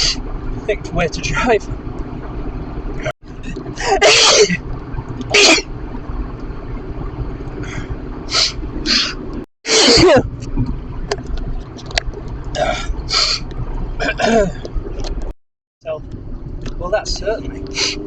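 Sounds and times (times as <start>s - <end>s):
car road rumble: 0.0s - 18.0s
man sneezing loudly: 3.8s - 4.6s.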